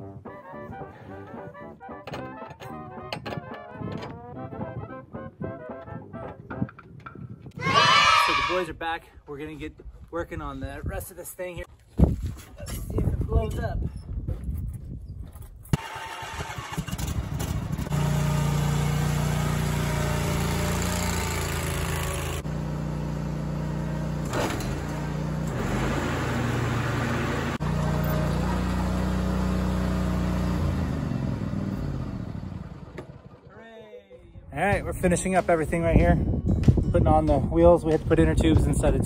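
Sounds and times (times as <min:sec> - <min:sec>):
lawnmower engine running: 0:15.8 - 0:33.5.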